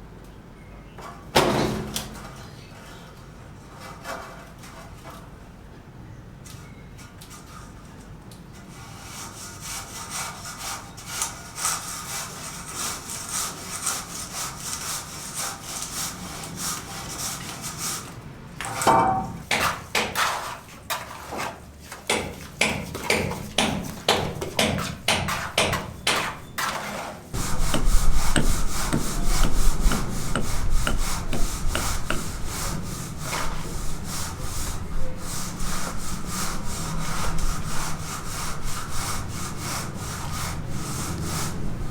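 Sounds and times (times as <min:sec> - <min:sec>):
rhythmic scraping strokes: 0:27.4 - 0:41.9.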